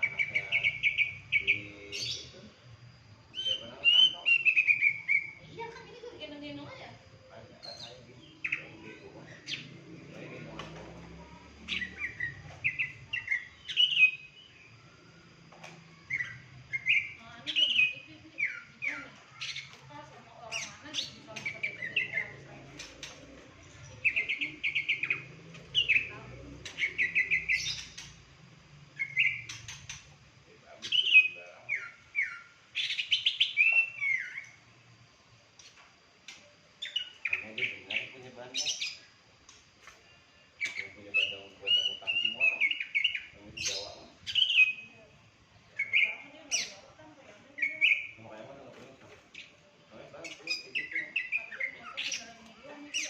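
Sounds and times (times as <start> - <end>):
songbird chirping: 0.0 - 53.0
songbird whistles and chirps: 11.7 - 15.0, 15.7 - 19.8, 29.0 - 30.0, 30.8 - 34.6, 39.9 - 45.1, 45.7 - 46.8.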